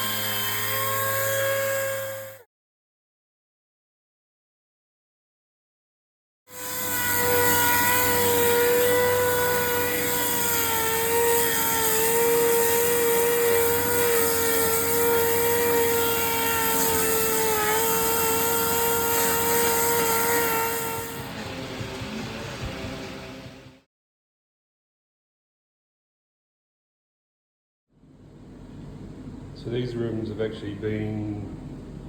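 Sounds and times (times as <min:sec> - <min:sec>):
electric sander whining on metal: 0:00.0 - 0:02.4, 0:06.5 - 0:23.5.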